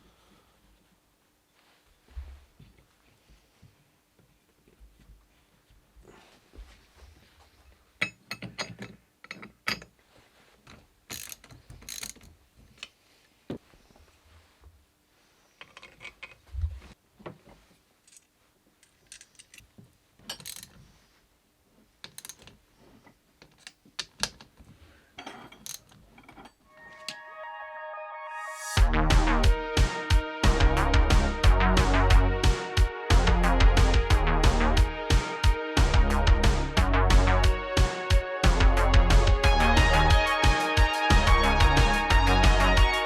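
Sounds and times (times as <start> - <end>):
clicks and knocks on metal parts: 8.0 - 10.0, 10.7 - 13.0, 15.6 - 16.4, 18.1 - 20.8, 22.0 - 22.6, 23.4 - 24.6, 25.2 - 26.6
short scraping rasps: 11.1 - 12.3, 20.4 - 20.7.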